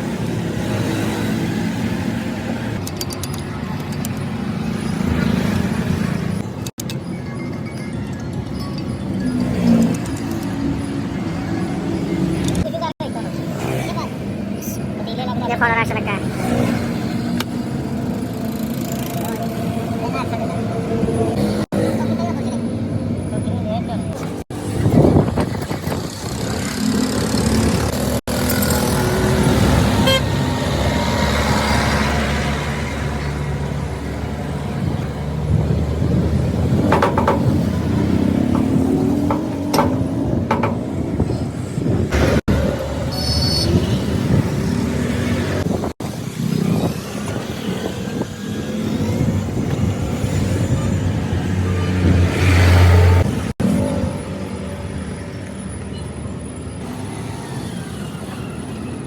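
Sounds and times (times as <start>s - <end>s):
roadside traffic noise: 0.0s - 59.0s
vehicle engines running: 0.0s - 59.0s
sharp knocks: 36.7s - 41.3s.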